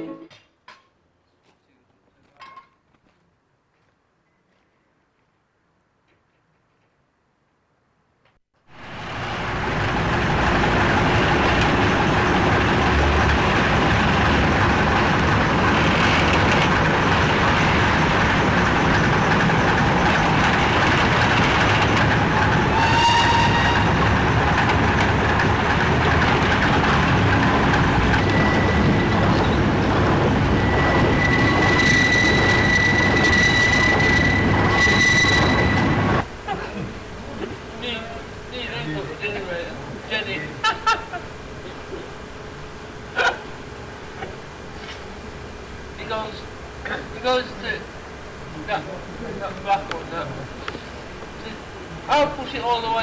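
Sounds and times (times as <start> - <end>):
train rumbling on rails: 8.7 - 36.5
rail squealing: 8.8 - 36.3.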